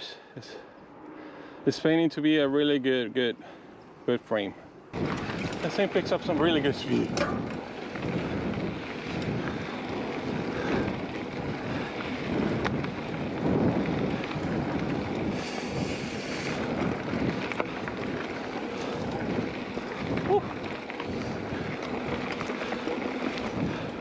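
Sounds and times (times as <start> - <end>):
bike rolling on trail: 3.4 - 24.0
bike clicks and rattles: 4.9 - 24.0
wind rushing over microphone: 4.9 - 24.0.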